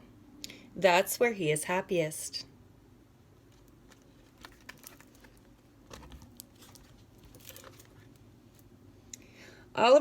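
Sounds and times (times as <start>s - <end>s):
faint paper rustling: 3.4s - 8.7s.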